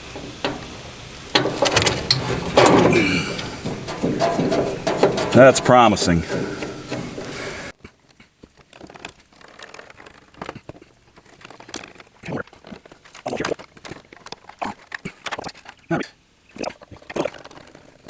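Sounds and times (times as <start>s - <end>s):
hand tool clicking and scraping metal: 0.0s - 7.7s.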